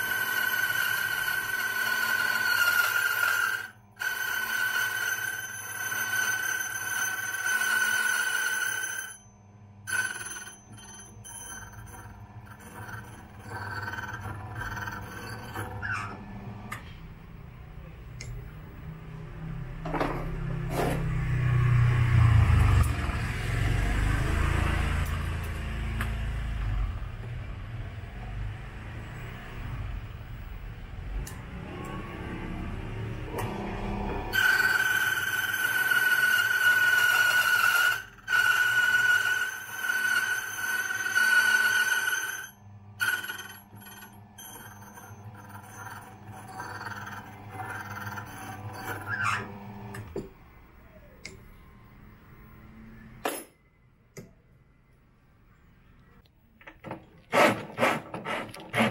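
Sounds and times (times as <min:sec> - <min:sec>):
cutter scraping key blank: 0:57.1 - 0:58.9.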